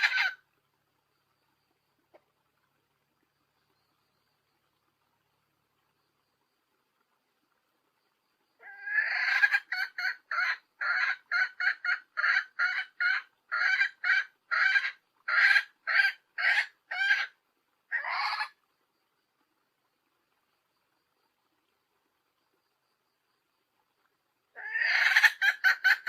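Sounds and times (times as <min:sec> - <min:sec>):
hen clucking: 0:00.0 - 0:00.4, 0:08.6 - 0:18.6, 0:24.6 - 0:26.0.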